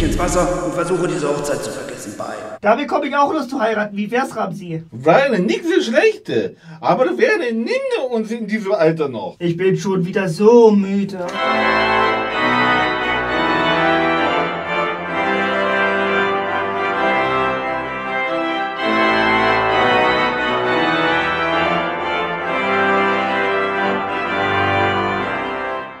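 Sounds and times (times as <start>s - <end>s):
organ playing chords: 11.2s - 26.0s.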